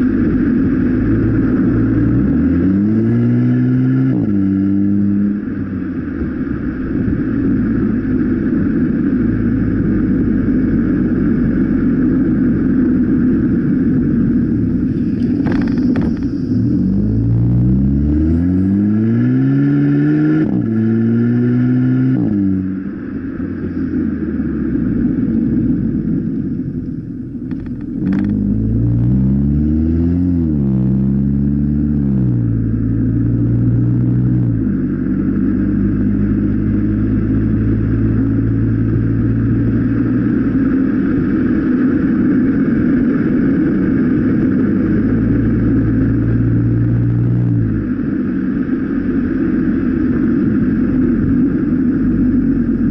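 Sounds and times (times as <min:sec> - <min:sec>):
car engine revving: 0:00.0 - 0:52.9.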